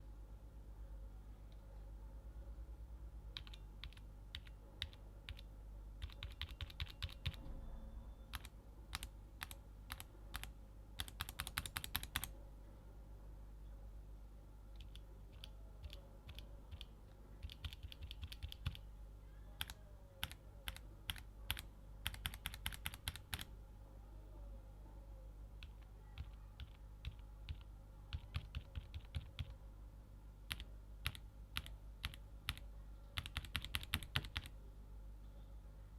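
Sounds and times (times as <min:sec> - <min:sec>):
mechanical keyboard keystrokes: 0:06.0 - 0:07.4, 0:08.3 - 0:12.3, 0:14.8 - 0:18.8, 0:19.6 - 0:23.5, 0:25.6 - 0:29.5, 0:33.2 - 0:34.5.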